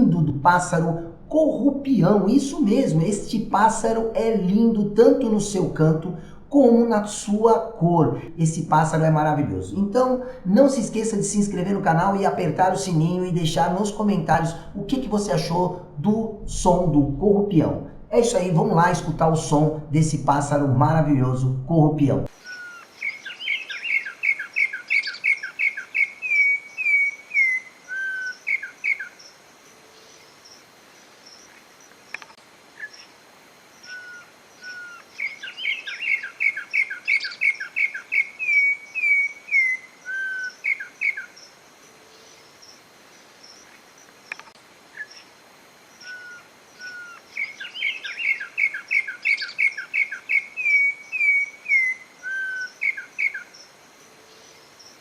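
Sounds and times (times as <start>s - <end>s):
bird whistling song: 22.4s - 29.1s, 33.9s - 41.3s, 46.0s - 53.5s.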